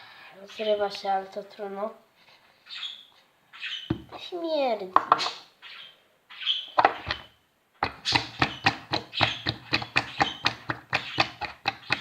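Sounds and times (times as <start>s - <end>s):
slime squelching: 7.8s - 12.0s.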